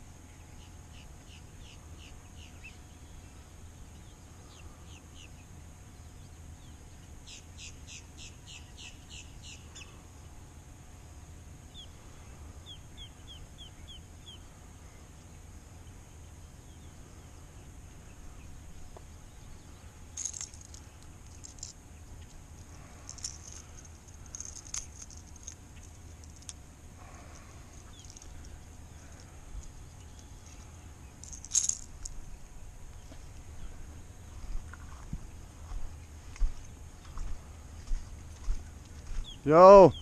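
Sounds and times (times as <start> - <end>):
steady low rumble: 0.0 - 40.0
bird chirping: 0.3 - 10.0, 11.7 - 22.4, 27.8 - 31.4, 38.0 - 40.0
metallic jingling and clinking: 20.2 - 26.6, 27.7 - 32.2.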